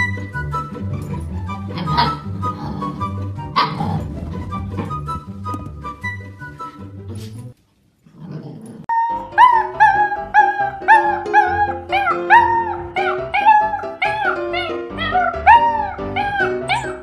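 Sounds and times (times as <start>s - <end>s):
background music: 0.0s - 7.6s, 8.9s - 17.0s
puppy yipping: 8.9s - 17.0s.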